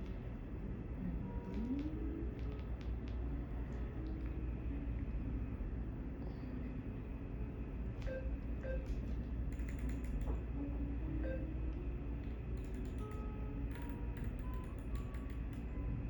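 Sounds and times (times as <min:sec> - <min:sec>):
steady low hum: 0:00.0 - 0:16.0
clicks of keys and controls: 0:01.4 - 0:03.2, 0:08.0 - 0:10.5, 0:12.2 - 0:15.8.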